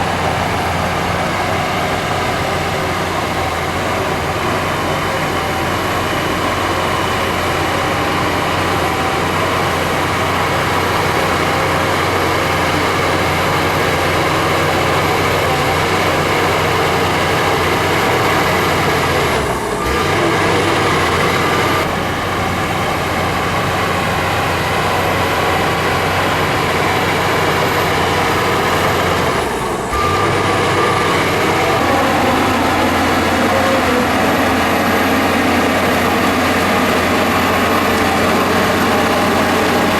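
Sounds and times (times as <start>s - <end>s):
diesel earthmoving machinery: 0.0s - 39.9s.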